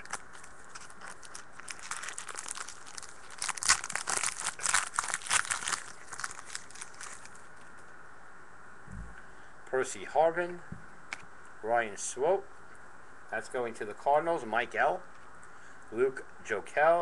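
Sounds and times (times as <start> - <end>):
wrapper tearing and crinkling: 0.0 - 7.7.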